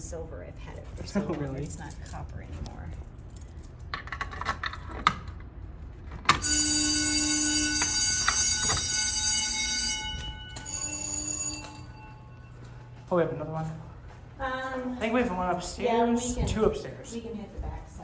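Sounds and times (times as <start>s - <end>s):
fire alarm bell ringing: 6.3s - 14.2s.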